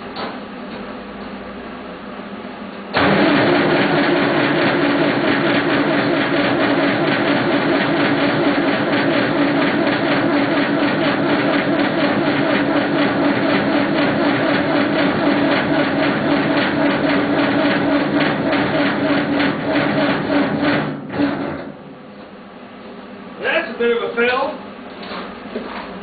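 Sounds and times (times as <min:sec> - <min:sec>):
engine starter cranking: 0:03.0 - 0:21.7.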